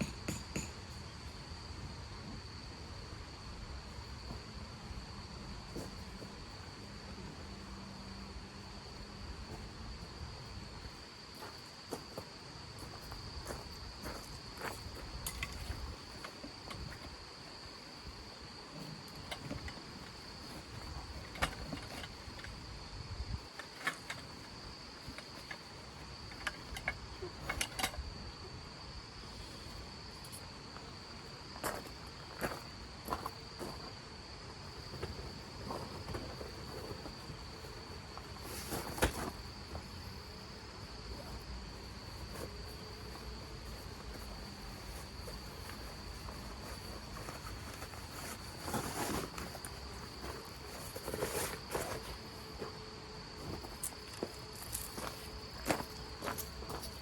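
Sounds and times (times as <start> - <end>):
cricket trilling: 0.0 - 57.0.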